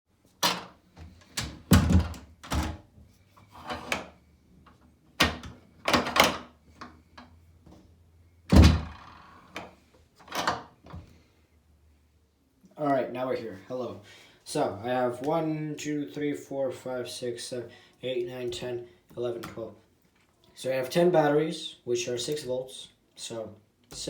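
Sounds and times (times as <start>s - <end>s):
knocks and thumps: 1.4s - 2.8s.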